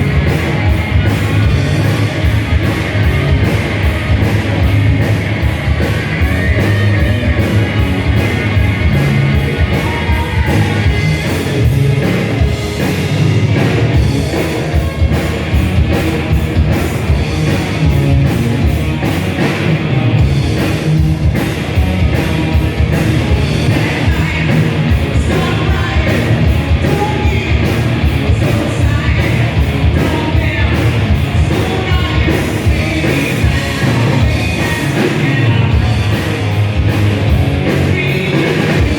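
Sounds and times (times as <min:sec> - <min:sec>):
live heavy metal band: 0:00.0 - 0:38.9
shouted vocals: 0:09.4 - 0:11.2.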